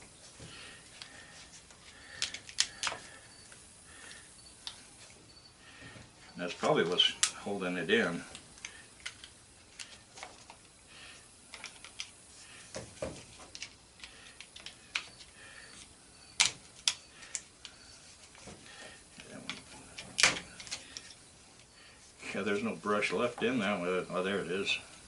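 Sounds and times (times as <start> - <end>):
small parts clicking and tapping: 0.9 - 5.1, 8.3 - 10.8, 11.5 - 21.7.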